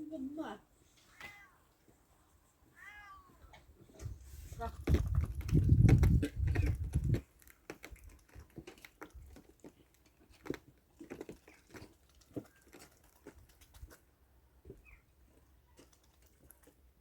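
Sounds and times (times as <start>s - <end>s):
pet chewing food: 4.7s - 14.1s, 15.3s - 17.0s.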